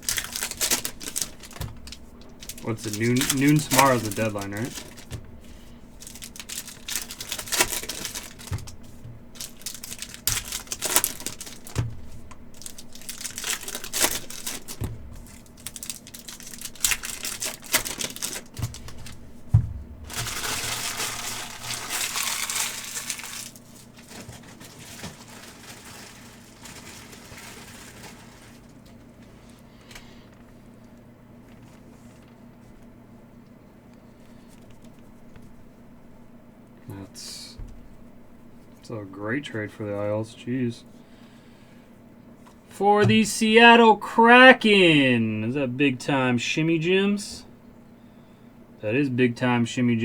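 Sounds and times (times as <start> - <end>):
cards being handled: 0.0 - 30.6
foil wrappers crinkling and tearing: 0.0 - 32.9.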